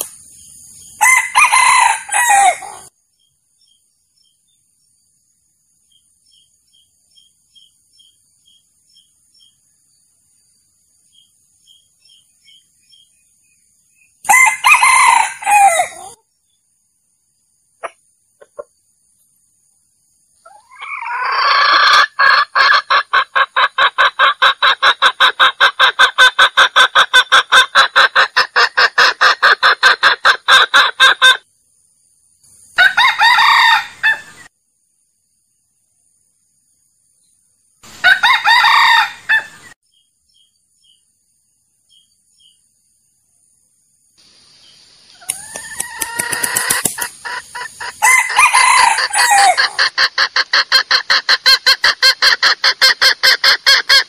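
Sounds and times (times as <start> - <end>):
rooster crowing: 1.0 - 2.9, 14.3 - 16.2, 20.5 - 22.6, 32.8 - 34.3, 38.0 - 39.6, 45.3 - 49.9
junglefowl clucking: 17.8 - 18.8, 20.4 - 31.4, 45.2 - 54.0.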